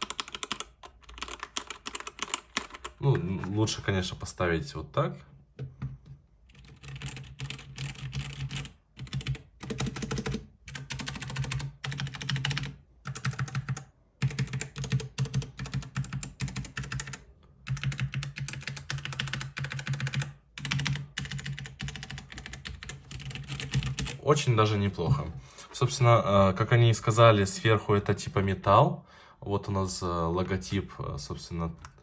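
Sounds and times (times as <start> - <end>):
mechanical keyboard typing clicks: 0.0 - 3.4, 6.5 - 24.2.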